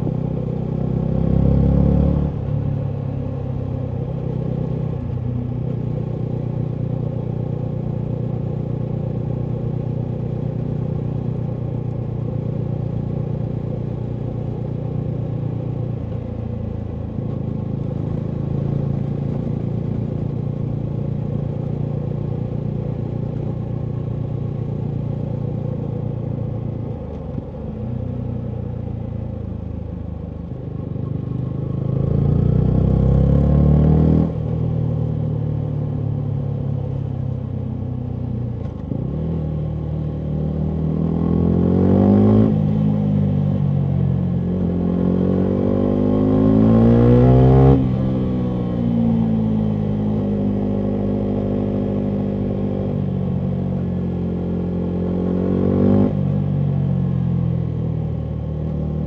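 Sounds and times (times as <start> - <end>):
motorcycle engine revving: 38.7 - 58.0.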